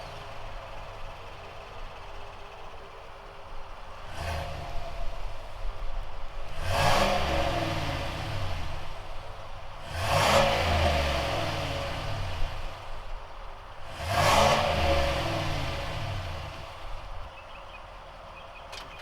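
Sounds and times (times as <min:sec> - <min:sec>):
engine revving: 0:03.9 - 0:05.8, 0:06.4 - 0:13.2, 0:13.8 - 0:17.3.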